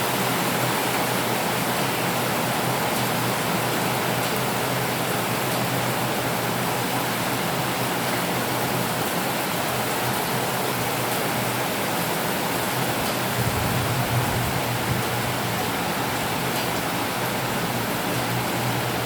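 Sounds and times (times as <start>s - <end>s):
steady rain falling: 0.0s - 19.0s
low rumble: 13.4s - 15.6s.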